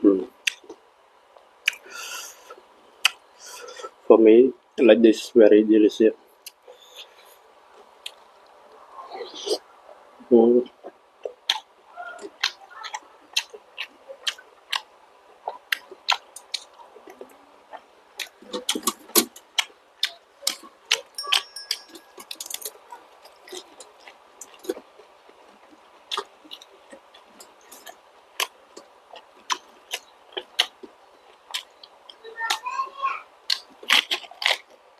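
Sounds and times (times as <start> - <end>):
wet mouth clicks: 0.4 - 0.6, 1.6 - 1.9, 10.8 - 14.9
chewing crunches: 1.6 - 1.9, 10.8 - 32.6, 33.5 - 34.8.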